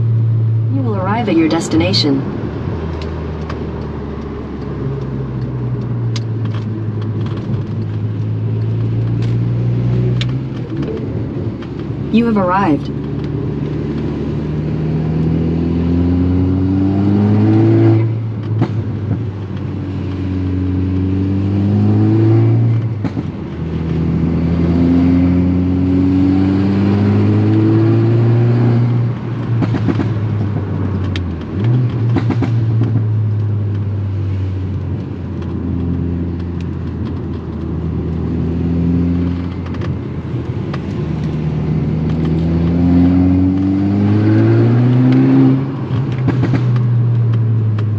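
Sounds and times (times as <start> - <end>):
turbocharged car engine revving: 13.5 - 18.9, 19.9 - 30.7, 41.2 - 47.1.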